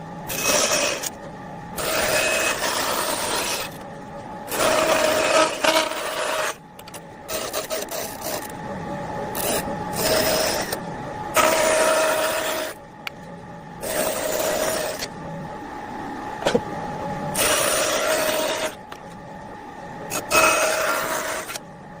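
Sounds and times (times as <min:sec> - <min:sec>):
tool rasping wood: 0:00.3 - 0:01.1, 0:01.8 - 0:03.8, 0:04.5 - 0:06.6, 0:09.4 - 0:10.8, 0:11.4 - 0:12.8, 0:13.8 - 0:15.1, 0:17.4 - 0:18.8, 0:20.1 - 0:21.6.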